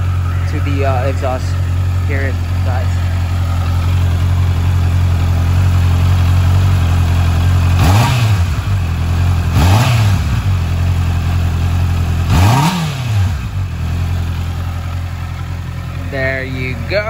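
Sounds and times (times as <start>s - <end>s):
motorcycle engine idling and revving: 0.0s - 17.0s.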